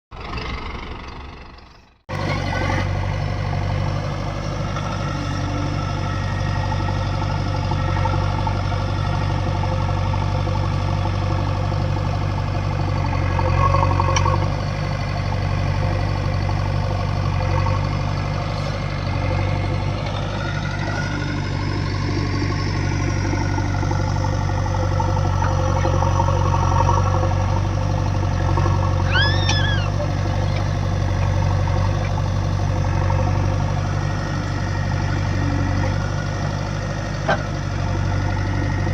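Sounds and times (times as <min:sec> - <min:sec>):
diesel engine running: 0:00.1 - 0:38.9
short high squeaks: 0:28.8 - 0:30.7.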